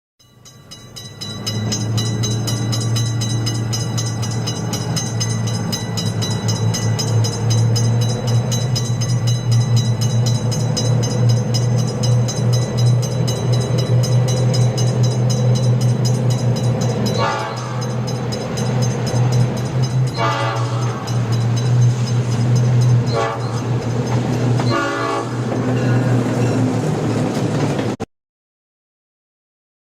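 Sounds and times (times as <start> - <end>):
crossing bell ringing: 0.2 - 27.0
train passing rumble: 0.3 - 28.0
train horn blasts: 17.2 - 17.9, 20.1 - 21.0, 23.1 - 23.6, 24.6 - 25.5.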